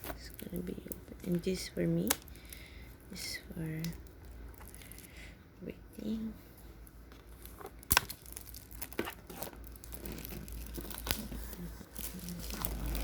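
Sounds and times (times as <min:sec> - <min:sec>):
packaging torn and crinkled: 0:07.4 - 0:13.0.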